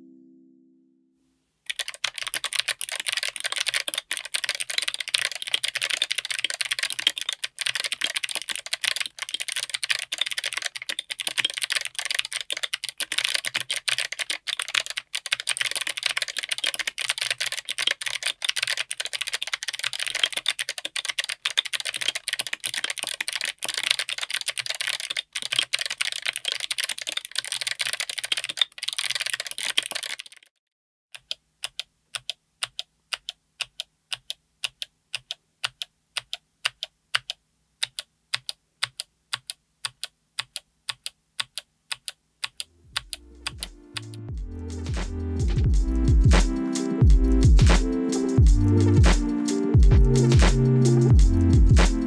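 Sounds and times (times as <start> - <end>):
fast mechanical keyboard typing: 1.7 - 30.5.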